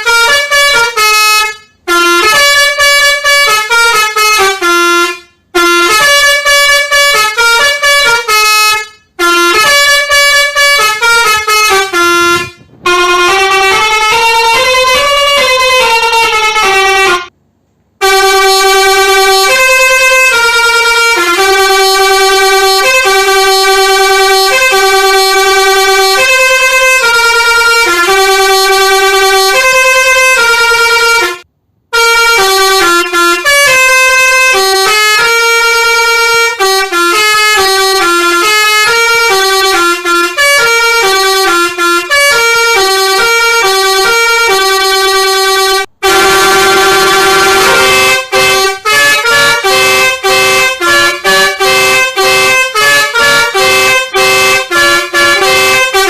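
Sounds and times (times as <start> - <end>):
truck musical horn melody: 0.0 - 17.4, 18.0 - 56.0.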